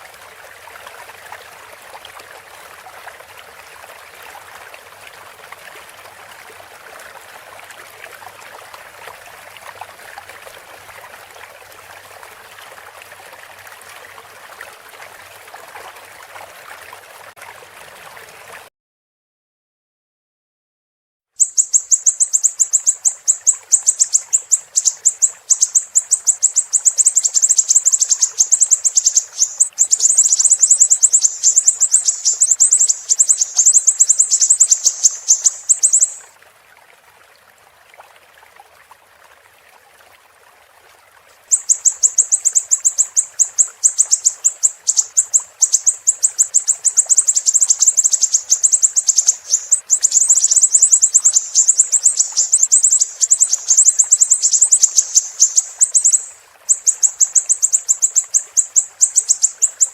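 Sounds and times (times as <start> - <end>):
bird chattering trill: 21.4 - 36.2, 41.5 - 59.9.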